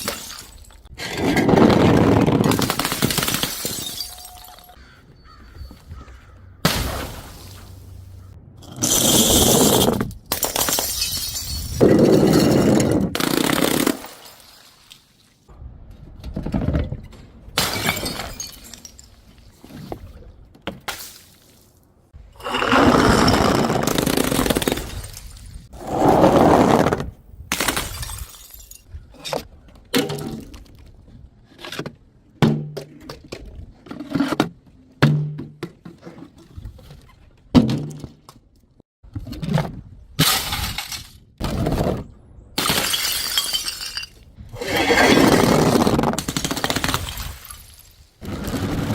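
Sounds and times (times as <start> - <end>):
glass bottles shattering: 0.0 - 0.9, 2.5 - 4.8, 8.8 - 13.0, 17.6 - 19.3, 27.6 - 28.9, 42.6 - 44.2
glass shards clinking: 3.4 - 4.8.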